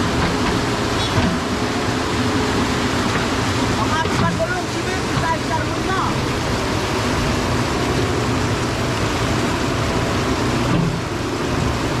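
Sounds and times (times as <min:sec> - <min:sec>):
continuous rushing noise: 0:00.0 - 0:12.0
diesel engine running: 0:00.0 - 0:12.0.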